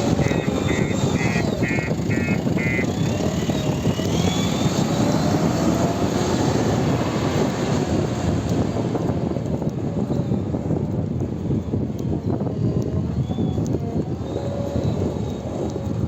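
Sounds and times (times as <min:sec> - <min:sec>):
heavy machinery engine rumble: 0:00.0 - 0:11.6.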